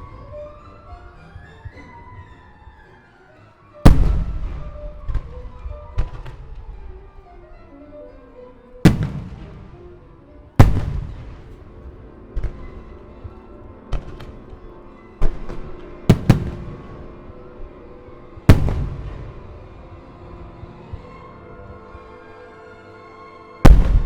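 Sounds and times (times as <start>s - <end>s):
music: 0.0s - 24.0s
firework shells bursting: 3.9s - 7.1s, 8.8s - 20.0s, 23.6s - 24.0s.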